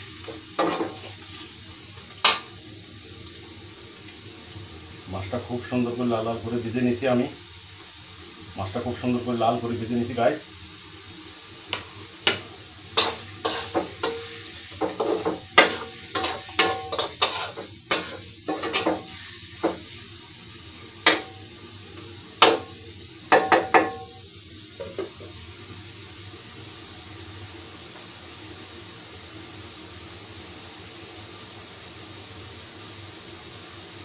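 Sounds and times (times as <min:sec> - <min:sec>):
metal spatula scraping a pan: 0:00.2 - 0:01.6, 0:11.7 - 0:20.0, 0:21.0 - 0:21.5.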